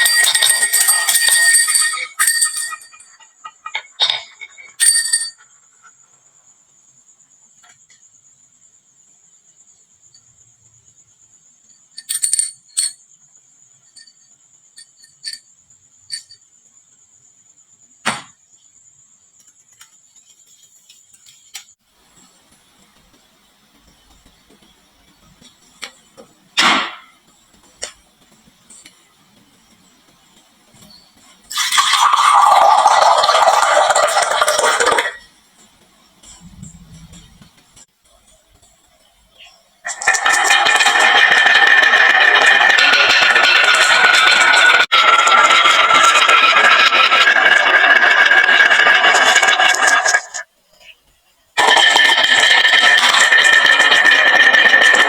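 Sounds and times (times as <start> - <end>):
marbles clattering on wood: 0.0 - 3.1, 24.0 - 35.3, 39.9 - 50.4, 51.6 - 55.0
faint high whine: 22.0 - 39.9.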